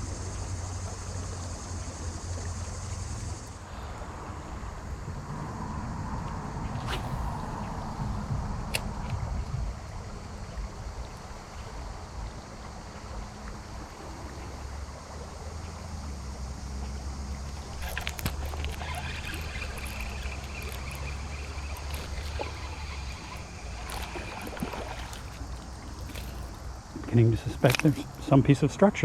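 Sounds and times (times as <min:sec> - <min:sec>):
wind rumble on microphone: 0:03.0 - 0:14.0
river water flowing: 0:09.8 - 0:29.0
high even whirring: 0:17.4 - 0:28.5
light clicks: 0:17.5 - 0:28.4.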